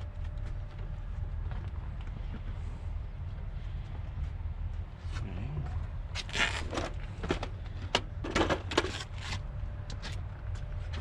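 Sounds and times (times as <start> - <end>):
low rumble: 0.0 - 8.6.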